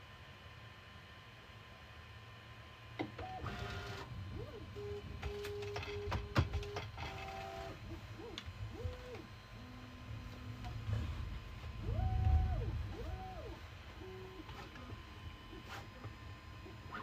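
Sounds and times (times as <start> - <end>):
stepper motors whining: 11.6 - 15.0.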